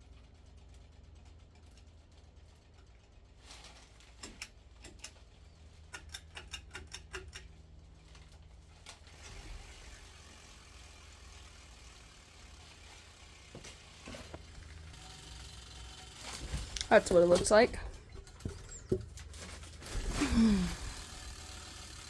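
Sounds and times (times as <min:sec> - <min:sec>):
light mechanical clicks and rattles: 0:00.0 - 0:20.2
ceiling fan whirring: 0:00.0 - 0:22.0.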